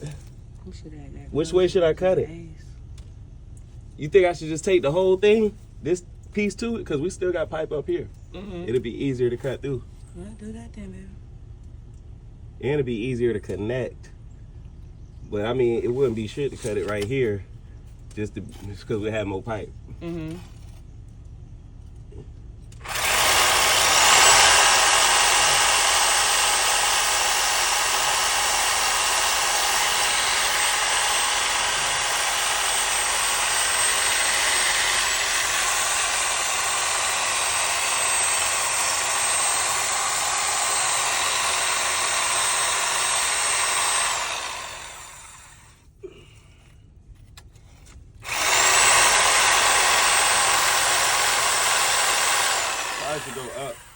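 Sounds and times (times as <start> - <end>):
reciprocating saw cutting metal pipe: 22.8 - 45.7, 48.2 - 53.9.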